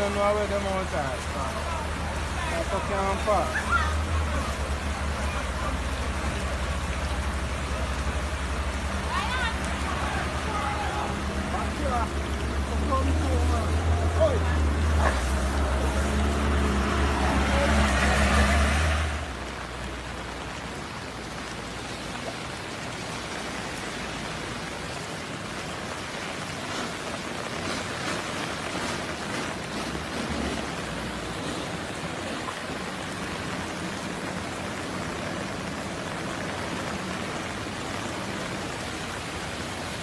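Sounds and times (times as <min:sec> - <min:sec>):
low engine rumble: 0:00.0 - 0:40.0
water rushing: 0:00.0 - 0:40.0.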